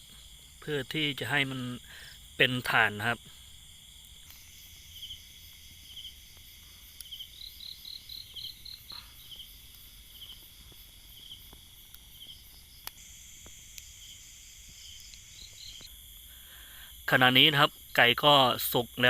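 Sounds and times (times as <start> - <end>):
crickets chirping: 0.0 - 19.0
insect pulsed call: 0.0 - 19.0
high-pitched insect buzzing chorus: 1.3 - 19.0
faint sharp clicks: 4.0 - 4.4, 6.3 - 7.2, 11.4 - 13.9, 14.7 - 16.3.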